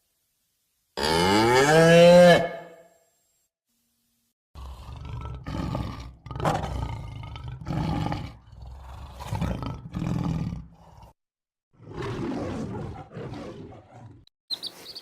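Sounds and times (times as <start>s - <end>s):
big cat roaring: 4.6s - 11.2s, 11.8s - 14.3s.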